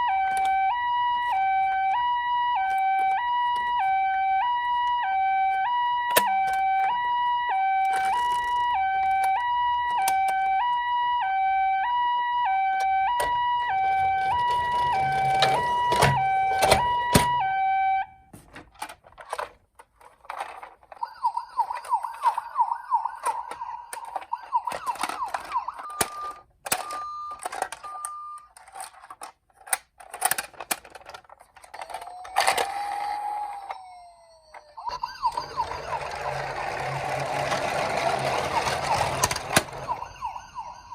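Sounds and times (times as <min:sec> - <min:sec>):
two-tone ambulance siren: 0:00.0 - 0:18.3, 0:20.9 - 0:28.5, 0:31.6 - 0:40.9
clicks and knocks: 0:23.1 - 0:32.8.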